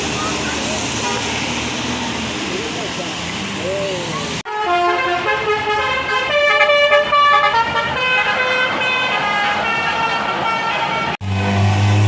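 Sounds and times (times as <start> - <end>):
road traffic noise: 0.0 - 12.0
multi-tone bus horn melody: 1.0 - 1.6, 4.4 - 12.0.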